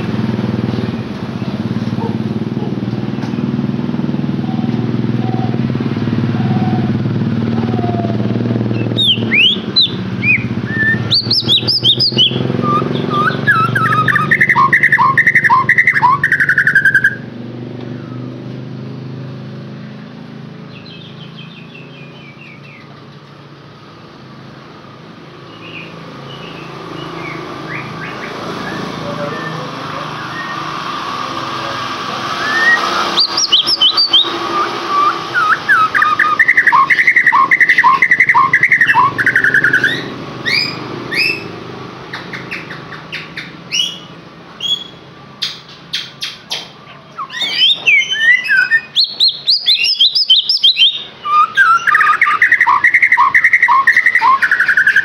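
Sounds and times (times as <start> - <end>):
songbird singing trills and whistles: 4.3 - 17.3, 20.7 - 23.0, 25.4 - 30.8, 32.4 - 55.0.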